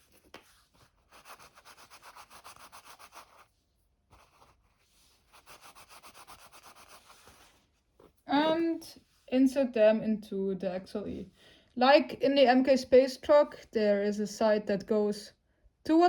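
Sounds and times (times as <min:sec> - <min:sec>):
paper towel rubbing metal: 0:00.0 - 0:07.7.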